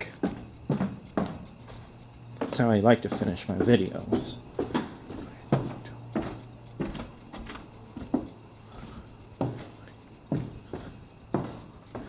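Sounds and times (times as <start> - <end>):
footsteps walking: 0.0 - 12.0.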